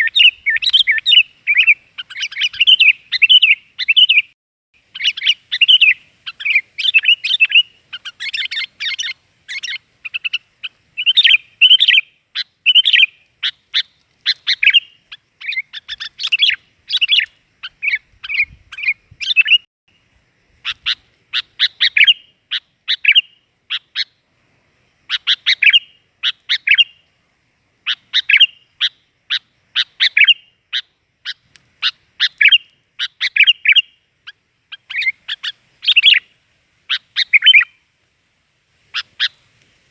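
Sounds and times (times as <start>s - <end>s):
bulbul chirping song: 0.0s - 24.3s, 24.9s - 37.9s, 38.9s - 39.5s.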